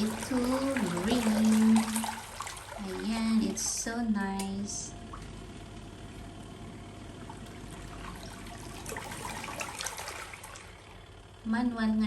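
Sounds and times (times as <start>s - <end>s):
water splashing: 0.0s - 4.0s, 7.2s - 11.0s
water swishing in washing machine: 0.0s - 11.4s.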